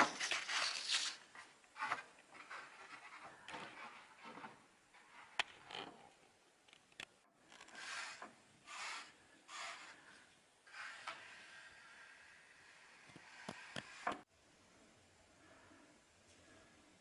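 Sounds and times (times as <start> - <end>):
tool scraping a surface: 7.6 - 14.3.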